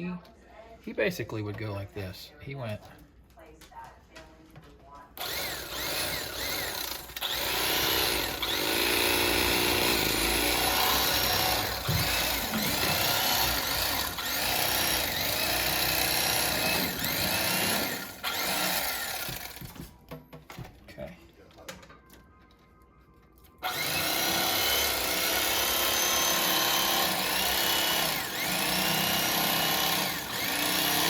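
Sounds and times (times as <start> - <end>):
electric fillet knife running: 5.2 - 19.7, 23.6 - 31.0.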